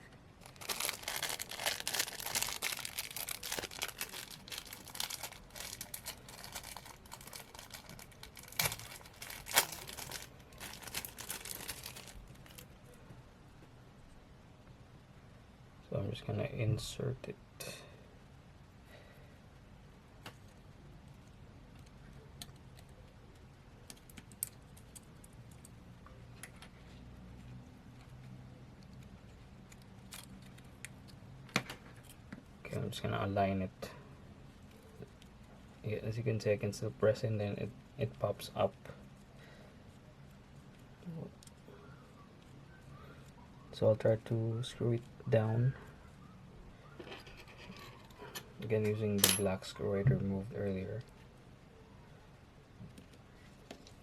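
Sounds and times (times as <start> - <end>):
low steady hum: 0.0 - 54.0
thin plastic crinkling: 0.4 - 13.0, 28.0 - 32.4.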